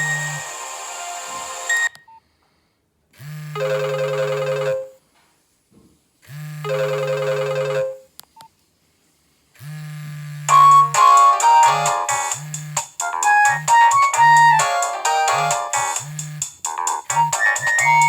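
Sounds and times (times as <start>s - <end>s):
mobile phone ringtone: 0.0s - 2.0s, 3.5s - 5.0s, 6.6s - 8.1s, 13.0s - 16.0s, 16.7s - 18.0s.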